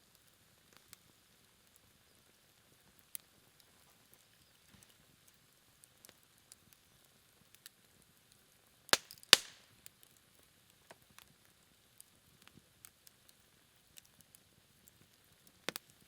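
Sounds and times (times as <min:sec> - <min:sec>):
burning wood popping: 0:00.0 - 0:16.0
campfire crackling: 0:00.0 - 0:16.0.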